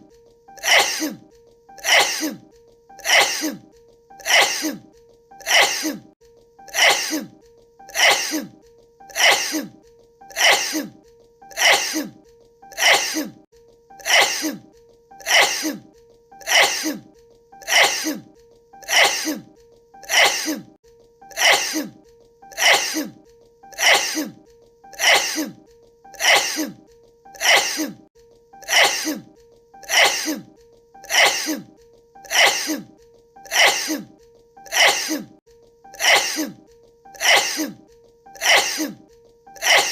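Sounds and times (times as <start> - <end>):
woman sneezing: 0.6 - 1.2, 1.8 - 2.4, 3.0 - 3.6, 4.2 - 4.8, 5.4 - 6.1, 6.7 - 8.5, 9.1 - 13.4, 14.0 - 23.2, 23.8 - 24.4, 25.0 - 25.6, 26.2 - 26.8, 27.4 - 28.0, 28.6 - 31.7, 32.3 - 32.9, 33.5 - 35.4, 36.0 - 36.6, 37.2 - 37.8, 38.4 - 39.0, 39.6 - 39.9.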